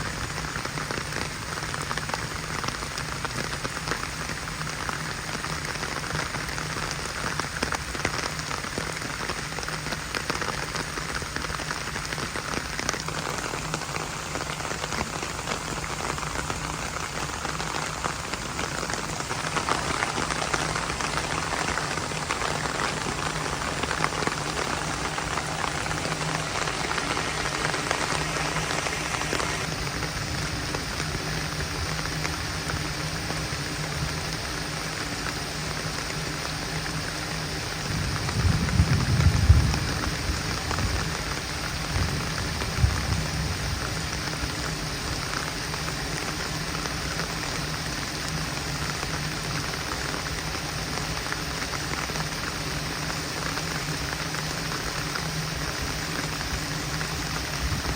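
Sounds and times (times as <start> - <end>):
heavy rain on hard surface: 0.0 - 57.9.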